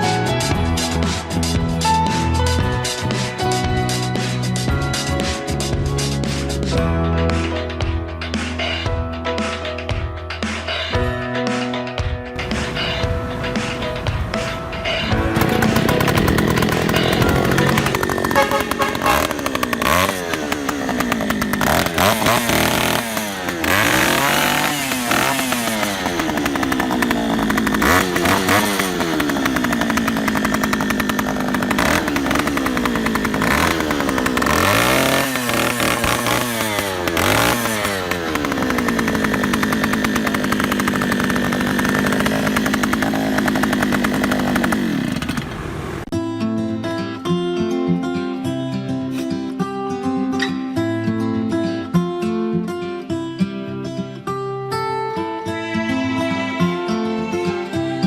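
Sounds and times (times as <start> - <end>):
small petrol engine revving: 14.9 - 46.1.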